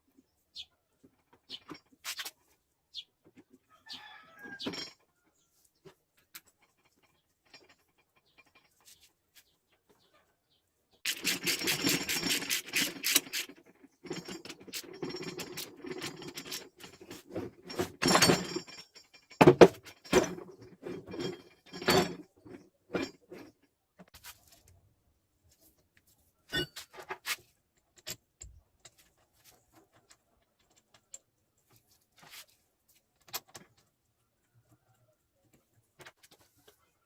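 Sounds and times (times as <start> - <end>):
clinks and knocks: 4.4 - 9.1, 11.1 - 24.1, 26.5 - 32.3
metal parts rattling: 6.3 - 9.1, 11.0 - 23.6.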